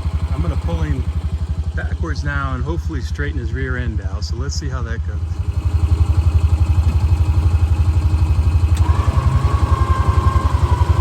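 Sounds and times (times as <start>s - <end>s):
engine idling: 0.0s - 11.0s
electric winch motor whining: 5.3s - 11.0s
click: 8.7s - 9.0s.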